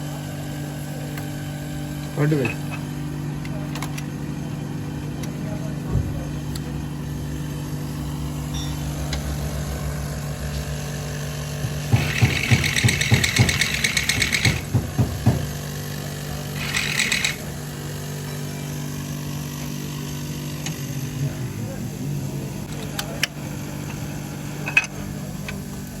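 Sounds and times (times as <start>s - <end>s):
low machine hum: 0.0s - 26.0s
rapid rattling knocks: 11.6s - 15.7s.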